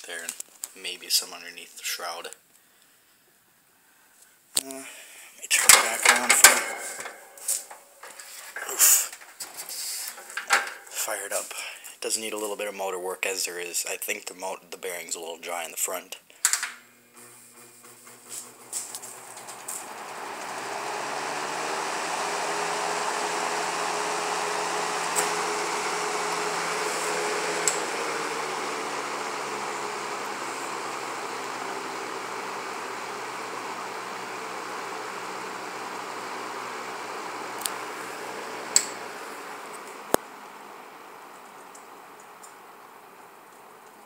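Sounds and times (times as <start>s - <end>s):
box fan running: 5.6s - 11.1s, 16.7s - 44.0s.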